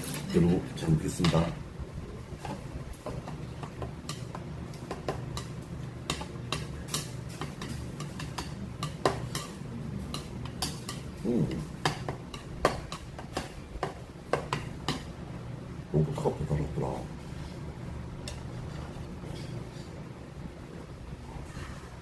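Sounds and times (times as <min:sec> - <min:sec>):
cutlery clinking against bowls: 0:00.0 - 0:01.6, 0:02.4 - 0:15.1
steady low hum: 0:00.0 - 0:22.0.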